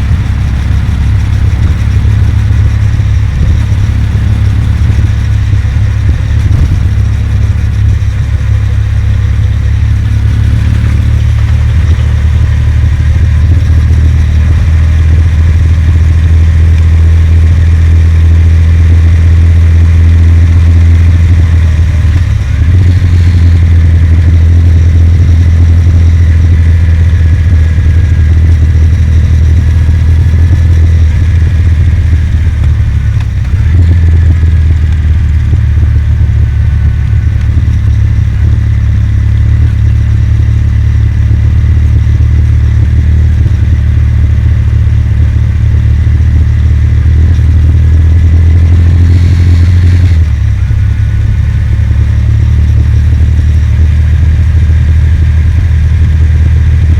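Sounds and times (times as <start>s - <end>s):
motorcycle engine running: 0.0s - 56.9s.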